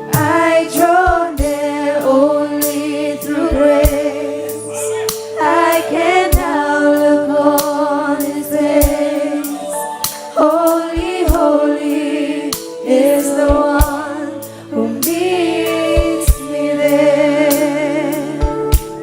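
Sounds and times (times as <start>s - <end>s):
sharp percussion strokes: 0.0s - 1.6s
women singing in close harmony: 0.0s - 19.0s.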